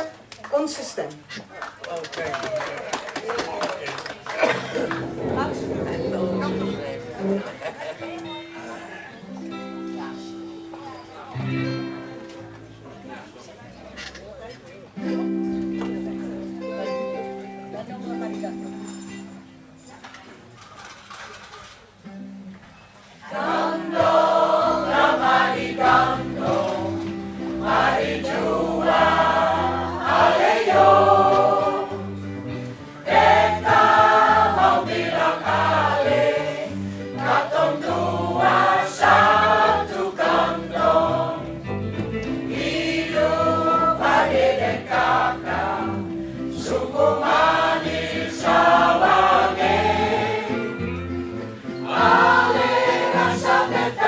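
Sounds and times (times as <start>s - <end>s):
choir singing: 4.5s - 7.9s, 23.2s - 32.2s, 33.0s - 41.6s, 42.4s - 50.9s, 51.8s - 54.0s
low instrumental accompaniment: 4.6s - 8.8s, 24.0s - 36.4s.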